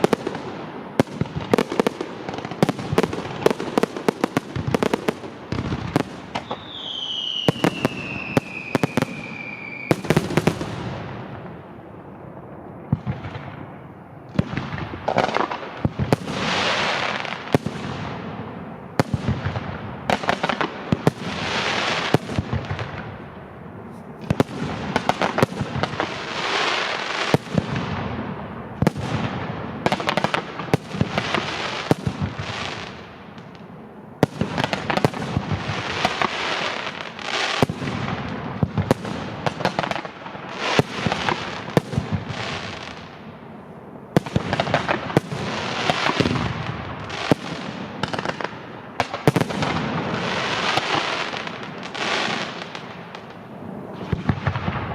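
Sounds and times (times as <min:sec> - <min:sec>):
crackling firework hiss: 0:00.0 - 0:11.5, 0:14.3 - 0:54.9
fireworks bangs: 0:00.0 - 0:54.9
whistling firework shell: 0:06.3 - 0:10.6.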